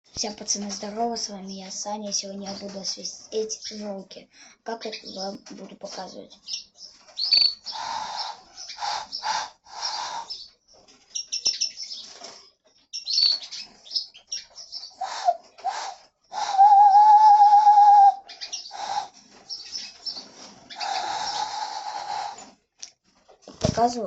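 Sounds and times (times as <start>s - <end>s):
breathy hand whistle puffs: 15.0s - 18.2s, 18.8s - 19.1s
dove-like hand whistle hoot: 15.0s - 18.2s.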